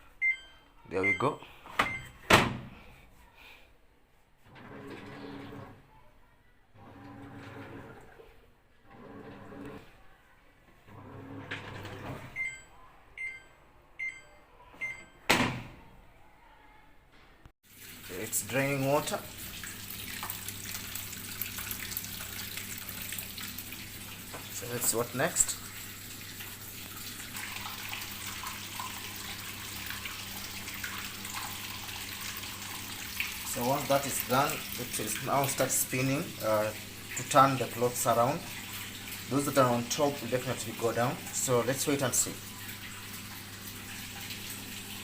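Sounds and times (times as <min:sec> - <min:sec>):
washing machine beeps: 0:00.0 - 0:02.3, 0:11.0 - 0:15.4
washing machine humming: 0:00.0 - 0:02.8, 0:04.4 - 0:05.9, 0:06.8 - 0:10.0, 0:10.8 - 0:14.2, 0:17.7 - 0:45.0
washing machine clunk: 0:01.8 - 0:02.8, 0:14.8 - 0:15.9
water rushing while draining: 0:17.7 - 0:45.0.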